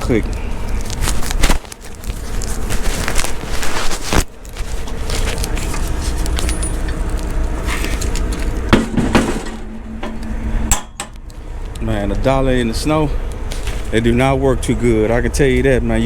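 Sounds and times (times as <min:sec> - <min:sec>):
metal rattles: 0:01.8 - 0:11.2
diesel truck engine idling: 0:04.3 - 0:16.0
sharp metal clanks: 0:08.7 - 0:11.2.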